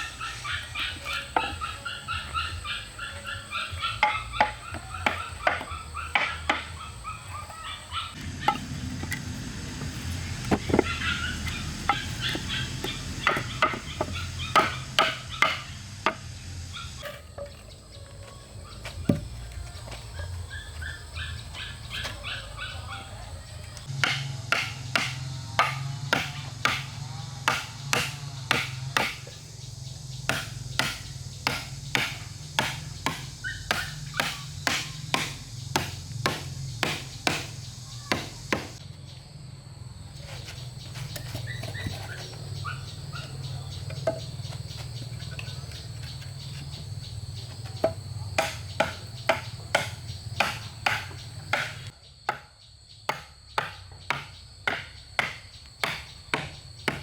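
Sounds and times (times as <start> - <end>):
hand tool striking wood: 0.1 - 2.6, 3.2 - 6.8, 8.2 - 16.4, 18.9 - 19.4, 23.8 - 38.8, 43.3 - 52.5, 53.1 - 57.0.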